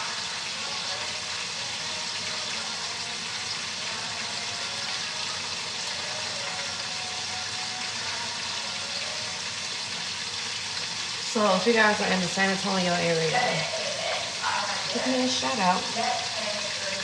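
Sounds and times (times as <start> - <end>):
chicken sizzling in hot oil: 0.0 - 17.0.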